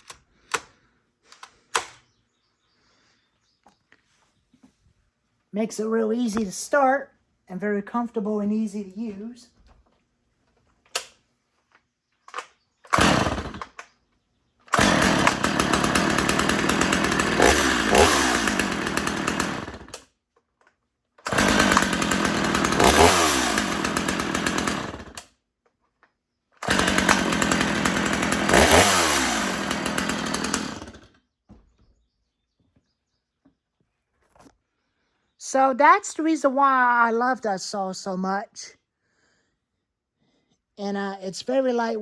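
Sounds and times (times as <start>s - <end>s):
chainsaw engine revving: 12.9s - 13.8s, 14.7s - 20.1s, 21.2s - 25.3s, 26.6s - 31.2s.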